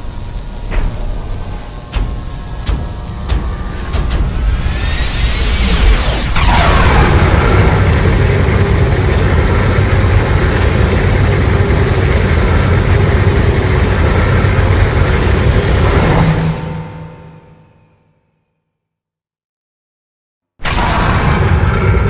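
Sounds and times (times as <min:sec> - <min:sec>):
deep rumble with rushing hiss: 0:00.0 - 0:16.6.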